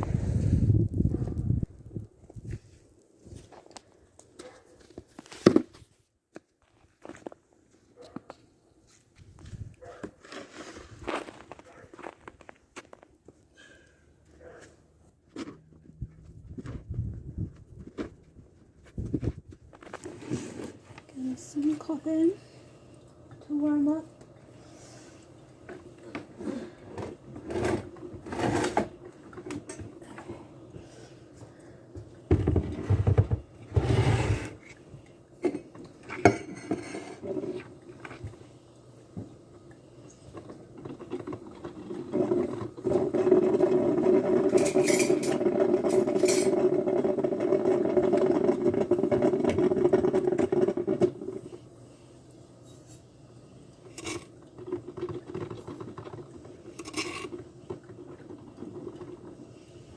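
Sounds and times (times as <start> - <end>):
dishes and cutlery clinking: 35.4 - 37.2.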